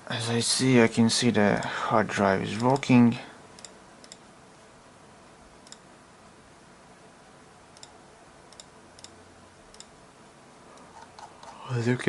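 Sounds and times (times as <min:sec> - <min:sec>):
steady low hiss: 0:00.0 - 0:12.0
computer keys clicking: 0:07.8 - 0:09.9.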